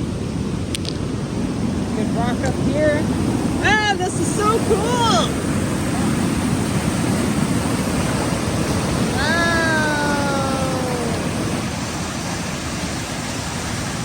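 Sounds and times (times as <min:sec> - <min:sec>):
creek rapids rushing: 0:00.0 - 0:14.0
long falling voice-like tone: 0:09.2 - 0:11.4.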